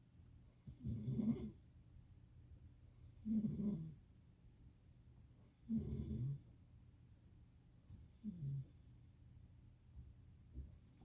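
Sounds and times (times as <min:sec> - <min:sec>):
snoring: 0:00.6 - 0:01.6, 0:03.2 - 0:04.0, 0:05.6 - 0:06.5, 0:08.1 - 0:08.9.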